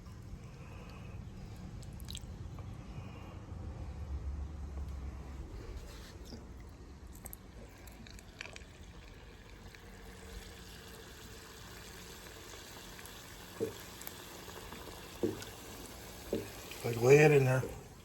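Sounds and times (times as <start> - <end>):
chicken deep-frying in oil: 8.2 - 18.0.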